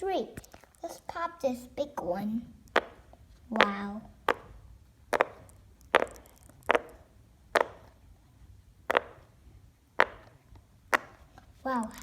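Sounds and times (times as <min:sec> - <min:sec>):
pop-it fidget toy popping: 0:02.7 - 0:08.0, 0:08.8 - 0:09.3, 0:10.0 - 0:11.3.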